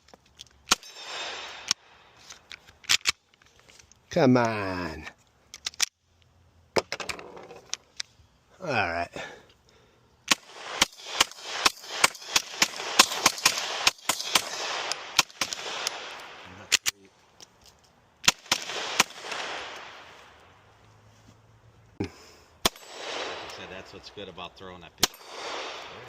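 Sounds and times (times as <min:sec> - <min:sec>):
rapid gunfire with echo: 0:00.8 - 0:01.7, 0:10.3 - 0:16.5, 0:18.3 - 0:20.0, 0:22.6 - 0:23.9, 0:25.0 - 0:26.0.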